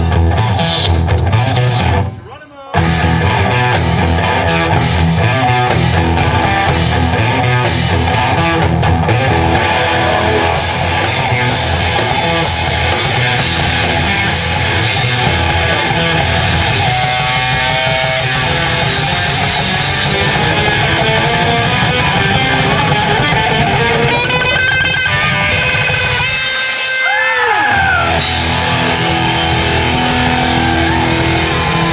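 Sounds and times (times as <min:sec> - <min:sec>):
electric guitar: 0:00.0 - 0:31.9
rock band playing live: 0:00.0 - 0:31.9.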